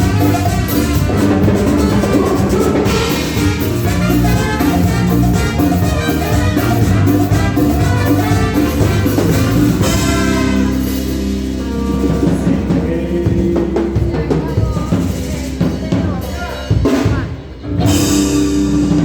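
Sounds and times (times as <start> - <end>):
drum strokes: 0.0 - 19.0
live band playing: 0.0 - 19.0.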